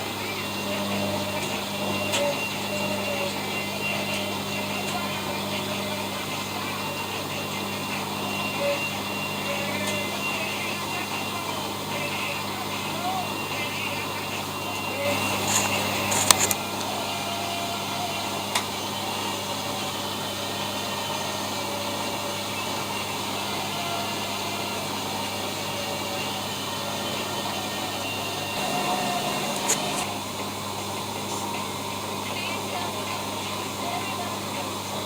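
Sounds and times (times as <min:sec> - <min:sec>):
washing machine running: 0:00.0 - 0:35.0
sharp clicks: 0:28.6 - 0:30.1.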